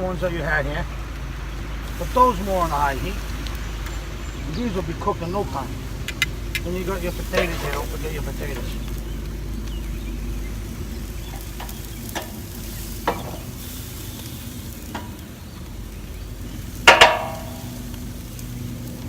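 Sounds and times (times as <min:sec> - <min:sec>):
steaks sizzling on a grill: 0:00.0 - 0:19.0
loud metal clank: 0:16.9 - 0:17.8.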